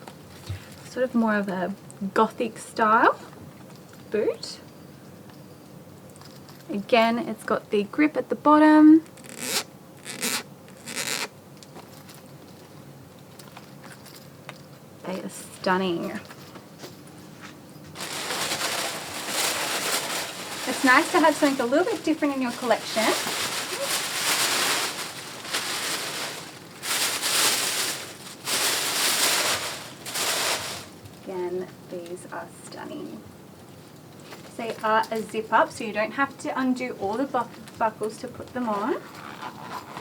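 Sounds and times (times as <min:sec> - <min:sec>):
rustling packaging: 0:09.0 - 0:14.7, 0:17.2 - 0:31.3.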